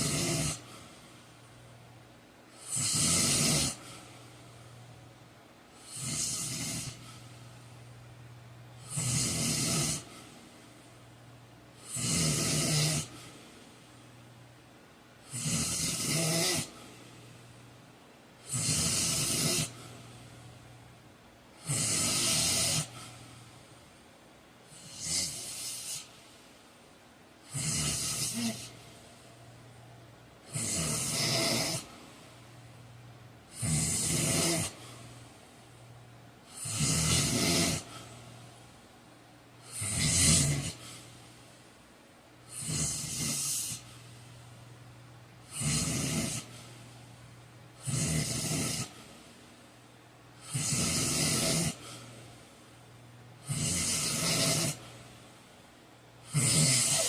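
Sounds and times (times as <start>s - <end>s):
man snoring loudly: 0.0s - 0.8s, 2.6s - 4.0s, 5.8s - 7.0s, 8.8s - 10.2s, 11.8s - 13.2s, 15.2s - 16.8s, 18.4s - 19.8s, 21.6s - 23.0s, 24.7s - 26.1s, 27.4s - 28.8s, 30.4s - 32.0s, 33.5s - 34.8s, 36.4s - 38.0s, 39.6s - 40.8s, 42.5s - 43.8s, 45.5s - 46.5s, 47.8s - 49.0s, 50.4s - 52.0s, 53.4s - 54.8s, 56.3s - 57.0s.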